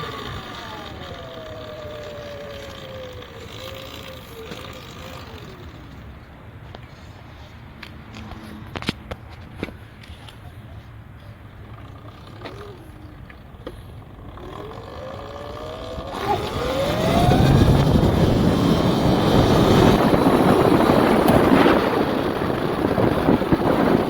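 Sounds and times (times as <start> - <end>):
electric motor whine: 0.0 - 6.3, 11.6 - 24.0
wind rushing on microphone: 15.9 - 24.0.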